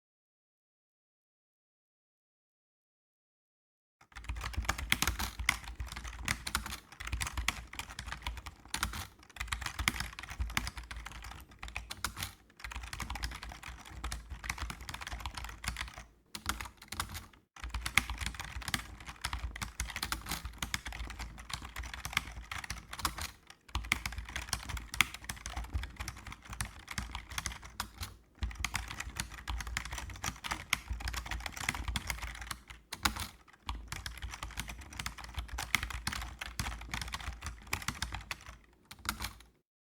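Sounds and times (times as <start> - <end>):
keyboard typing clicks: 4.2 - 39.5.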